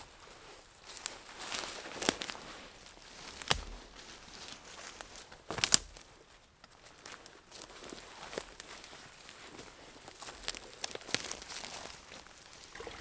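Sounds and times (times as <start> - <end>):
sticks snapping underfoot: 3.2 - 3.9, 4.9 - 6.1
footsteps on forest floor: 7.0 - 12.2.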